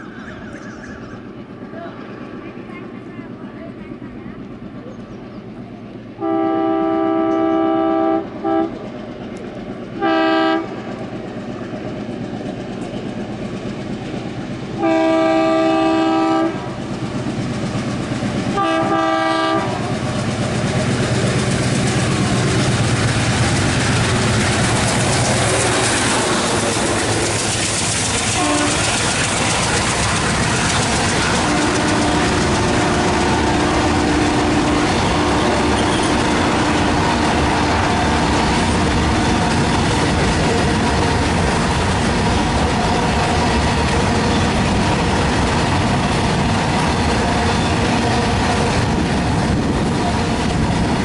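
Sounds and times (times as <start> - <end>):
diesel engines chugging: 0.0 - 51.0
locomotive horn blasts: 6.2 - 8.8, 10.0 - 10.8, 14.8 - 16.7, 18.6 - 19.9, 28.3 - 29.0, 31.4 - 37.8.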